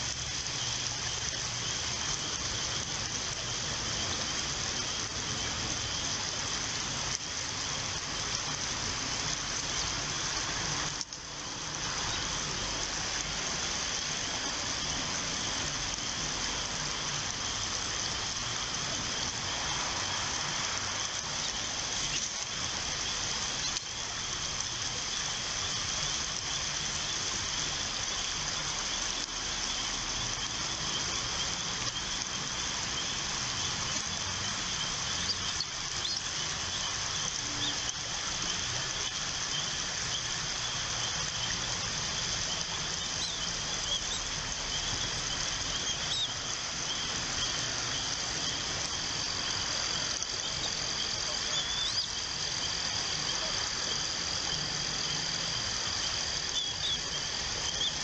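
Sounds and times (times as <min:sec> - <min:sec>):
constant hiss: 0:00.0 - 0:58.0
insect chorus: 0:00.0 - 0:58.0
faint bird chirps: 0:34.5 - 0:49.0, 0:50.1 - 0:52.2, 0:56.5 - 0:58.0.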